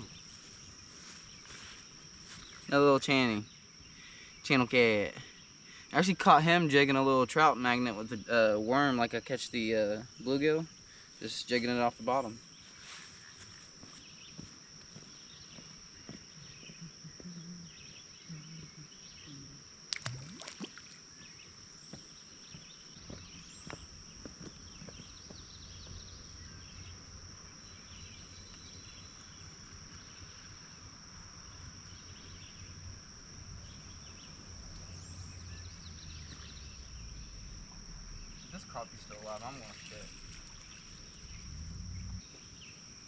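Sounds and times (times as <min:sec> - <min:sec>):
high-pitched insect chorus: 0:00.0 - 0:43.0
low rumble: 0:33.5 - 0:42.4.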